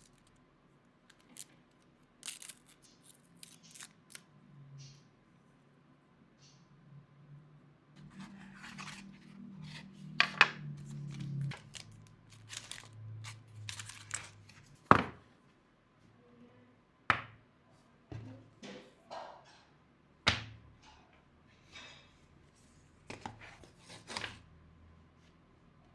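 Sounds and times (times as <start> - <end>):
packaging rustling and tearing: 0.0 - 0.3, 1.1 - 4.2, 10.8 - 14.7.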